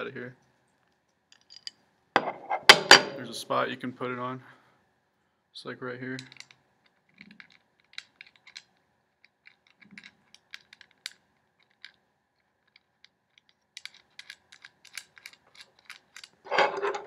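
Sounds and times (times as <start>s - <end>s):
small metal and plastic parts clicking: 6.1s - 17.0s.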